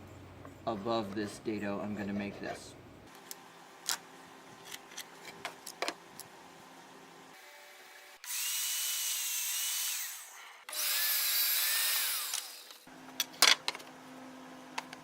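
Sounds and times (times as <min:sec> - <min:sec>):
table saw cutting plywood: 0:07.4 - 0:12.8.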